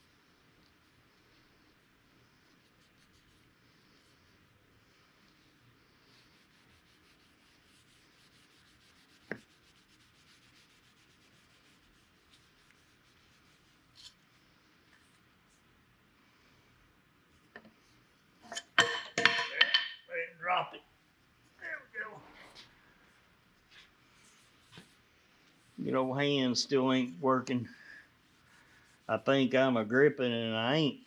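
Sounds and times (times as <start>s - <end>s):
faint rubbing on wood: 0.0s - 15.7s, 23.6s - 30.2s
object dropped clattering: 18.5s - 20.0s.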